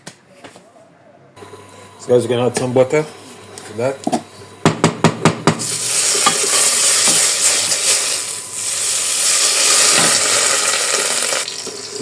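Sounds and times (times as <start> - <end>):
butter sizzling in a pot: 5.5 - 12.0.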